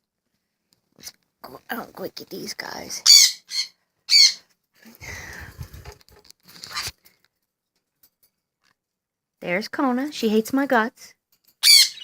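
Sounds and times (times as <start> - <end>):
parrot squawks: 3.0 - 4.4, 11.6 - 12.0
rustling handling noise: 4.8 - 8.8.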